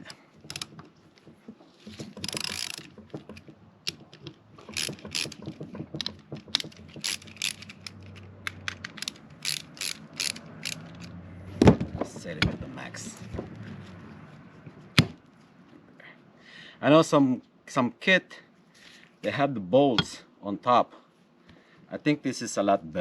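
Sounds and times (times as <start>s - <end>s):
hand ratchet clicking: 0.0s - 0.8s, 2.0s - 11.2s.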